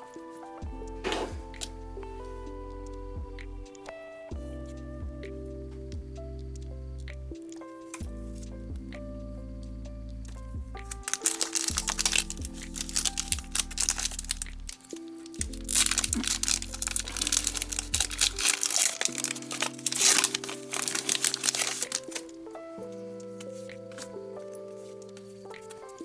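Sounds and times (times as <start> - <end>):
background music with held notes: 0.0 - 26.0
foil wrapper crinkling: 10.9 - 22.3.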